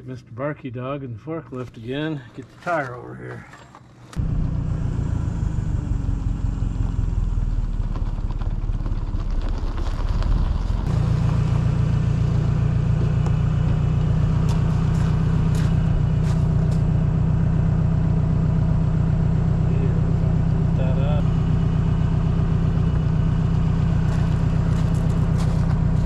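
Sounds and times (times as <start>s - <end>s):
forklift engine running: 3.4s - 26.0s.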